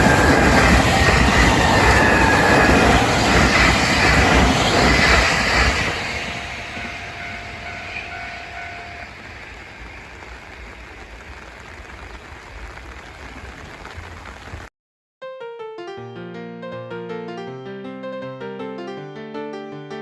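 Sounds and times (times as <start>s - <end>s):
train rumble: 0.0s - 14.7s.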